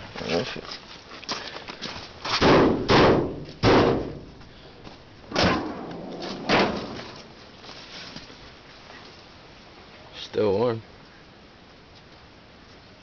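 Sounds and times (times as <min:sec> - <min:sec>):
heavy thumps and bangs: 0:02.3 - 0:07.3.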